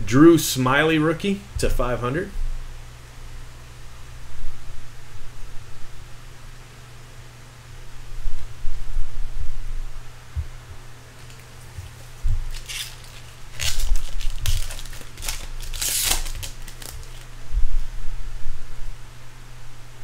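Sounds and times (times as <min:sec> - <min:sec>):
low hum: 0:00.0 - 0:20.0
foil wrapper ripping: 0:12.4 - 0:17.3.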